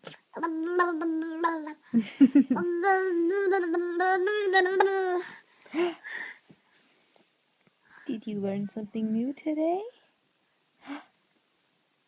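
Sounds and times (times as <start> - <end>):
baby humming tones: 0.3 - 1.9, 2.5 - 6.0.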